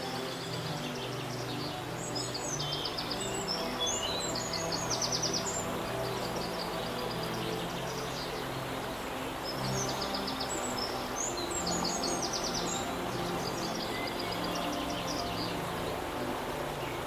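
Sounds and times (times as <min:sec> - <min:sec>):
birds trilling: 0:00.0 - 0:17.0
flowing water: 0:00.0 - 0:17.0
soft background music: 0:00.0 - 0:17.0.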